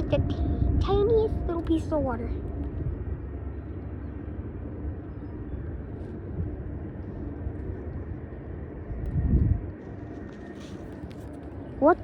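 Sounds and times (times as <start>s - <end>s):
wind blowing on microphone: 0.0s - 3.3s, 5.5s - 9.8s.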